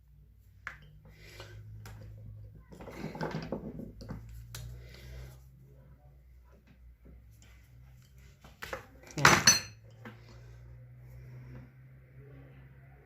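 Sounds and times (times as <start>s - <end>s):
faint low hum: 3.7s - 13.0s.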